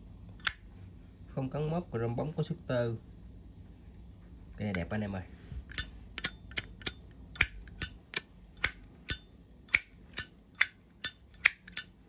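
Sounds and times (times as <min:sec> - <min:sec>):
metallic ringing ping: 0:05.7 - 0:06.5, 0:07.4 - 0:12.0.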